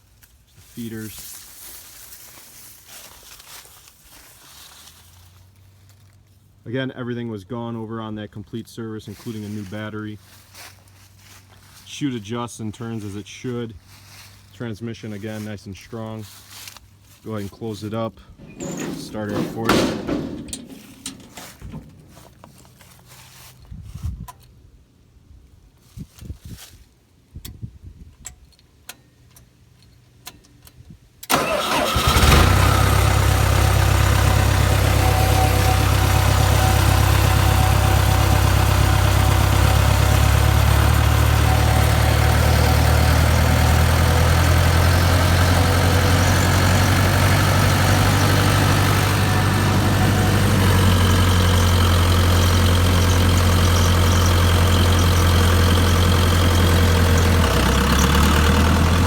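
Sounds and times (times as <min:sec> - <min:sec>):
wood chipper engine starting: 0:18.4 - 0:22.5, 0:31.3 - 0:59.0.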